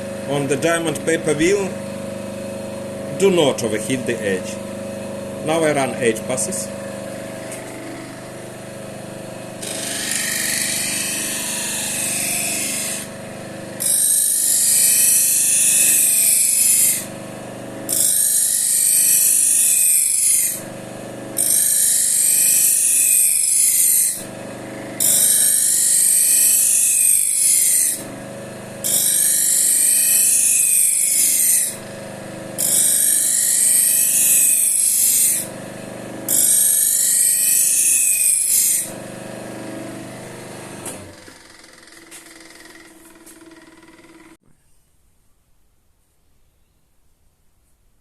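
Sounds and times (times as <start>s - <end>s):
grinder motor running: 0.0s - 44.4s
blade rasping on spinning wheel: 9.5s - 13.1s, 13.8s - 17.1s, 17.9s - 20.6s, 21.3s - 28.2s, 28.8s - 31.9s, 32.6s - 35.6s, 36.2s - 39.2s, 40.0s - 44.4s.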